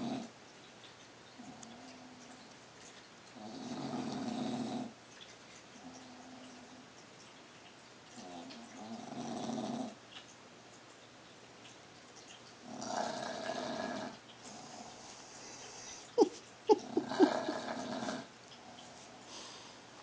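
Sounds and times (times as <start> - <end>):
dog snoring: 0.0 - 0.3, 3.4 - 5.0, 8.2 - 10.0, 12.7 - 15.0, 16.8 - 18.3.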